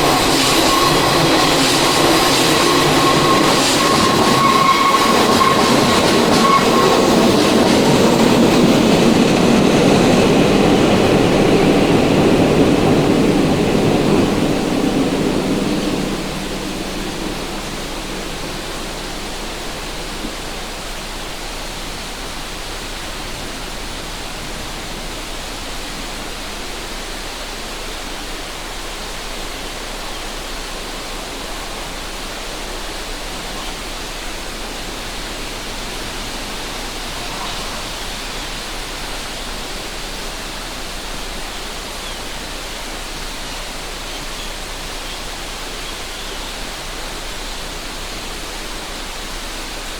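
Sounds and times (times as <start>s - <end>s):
wind rumble on microphone: 0.0s - 26.6s
river water rushing: 0.0s - 49.9s.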